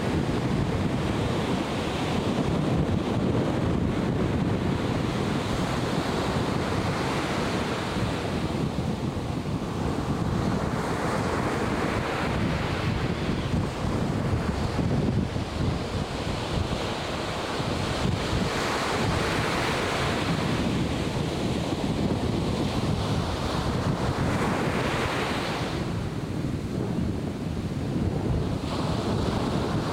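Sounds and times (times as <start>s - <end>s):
surf breaking and washing in: 0.0s - 29.9s
wind buffeting microphone: 0.0s - 29.9s.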